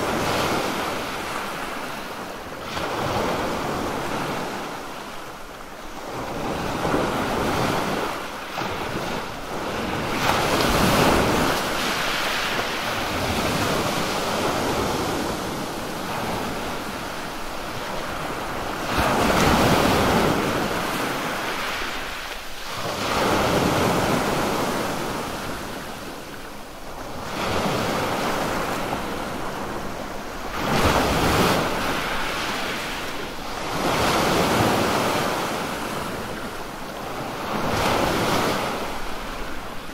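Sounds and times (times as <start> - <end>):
waves breaking on shore: 0.0 - 39.9.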